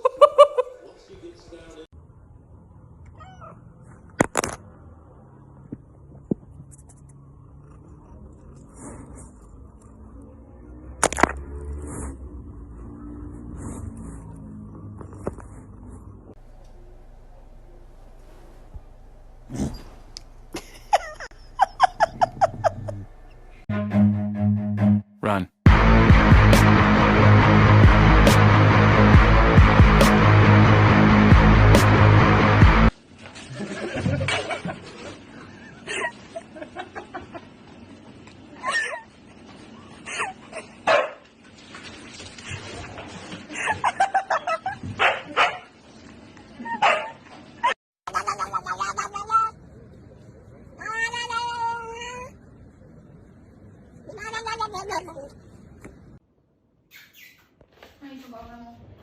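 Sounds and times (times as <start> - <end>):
cat meowing: 3.1 - 3.7
electronic music with heavy bass: 25.7 - 32.9.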